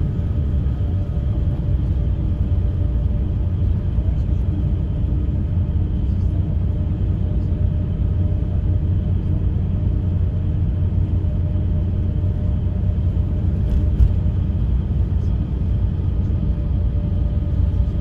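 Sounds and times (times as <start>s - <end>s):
bus engine and road rumble: 0.0s - 18.0s.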